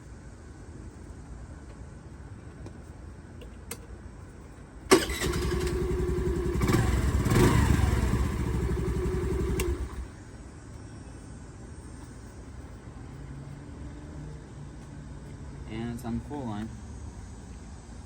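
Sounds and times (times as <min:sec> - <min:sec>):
scooter engine starting and running: 0:04.9 - 0:10.1.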